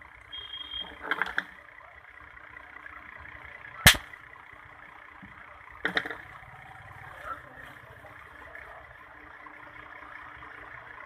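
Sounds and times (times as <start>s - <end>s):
capacitor discharge crack: 3.9s - 4.2s.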